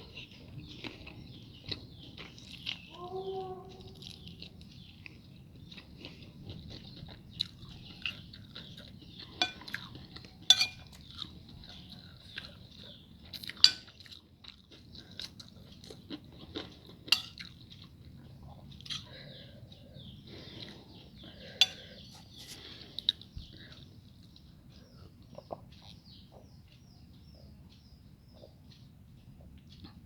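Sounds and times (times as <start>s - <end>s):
food being chewed and crunched: 0.0s - 3.0s, 3.8s - 26.8s
clinks against a plate: 9.4s - 9.9s, 10.5s - 11.0s, 13.6s - 14.0s, 17.1s - 17.5s, 21.6s - 21.9s.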